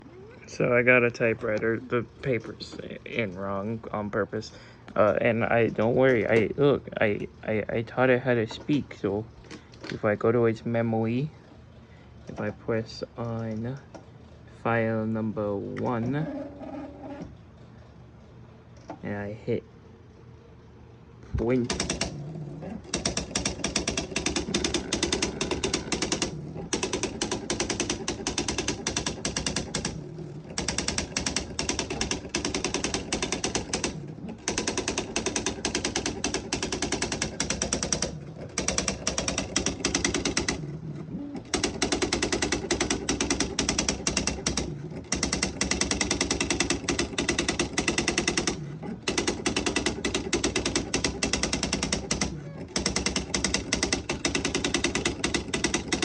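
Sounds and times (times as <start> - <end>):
electronic typewriter striking keys: 21.4 - 22.2, 22.8 - 40.7, 41.4 - 56.0.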